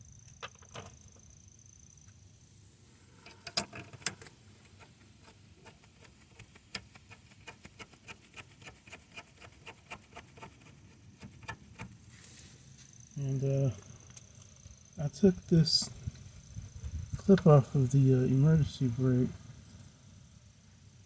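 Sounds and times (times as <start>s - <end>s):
metal clicks and knocks: 3.2s - 4.9s.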